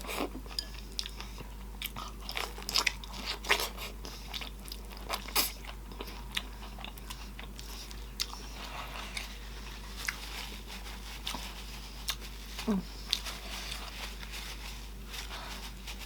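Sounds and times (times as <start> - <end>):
wet chewing and mouth smacking: 0.1 - 8.5, 12.0 - 12.2.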